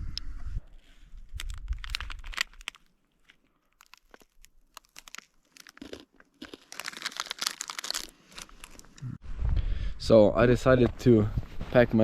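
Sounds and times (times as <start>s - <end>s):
plastic packaging crinkling: 1.2s - 9.0s.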